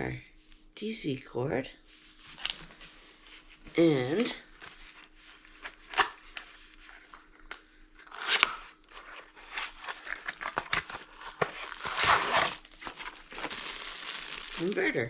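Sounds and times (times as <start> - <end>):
packaging rustling: 4.6 - 15.0.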